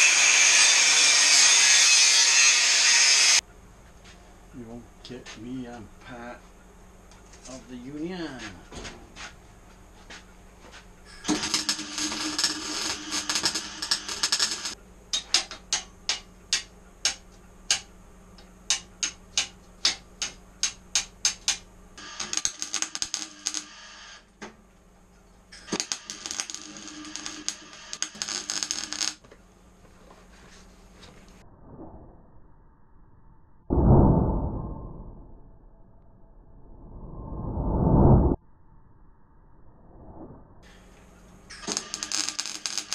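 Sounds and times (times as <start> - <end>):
arc welder crackling: 0.0 - 3.4, 11.1 - 24.6, 25.5 - 29.4, 40.7 - 42.9.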